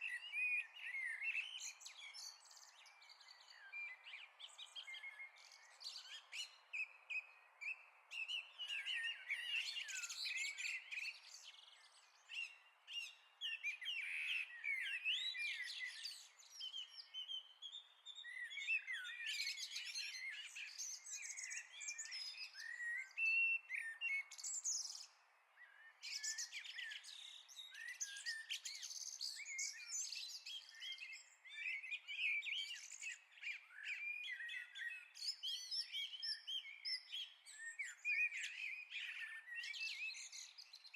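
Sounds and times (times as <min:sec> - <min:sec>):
songbirds singing: 0:00.0 - 0:40.9.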